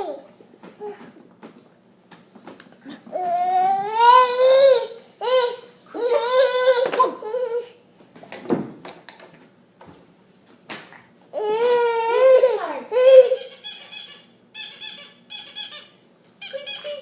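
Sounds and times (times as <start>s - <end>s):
baby squealing: 11.6s - 16.0s.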